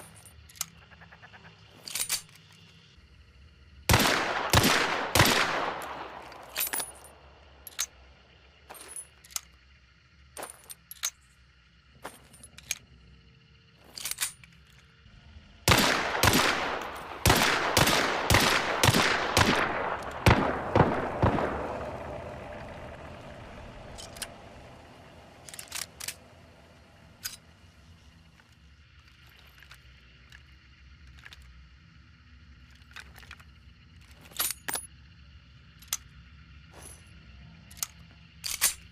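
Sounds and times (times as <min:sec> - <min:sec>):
pistol gunshots: 0:03.9 - 0:07.0, 0:15.6 - 0:23.0.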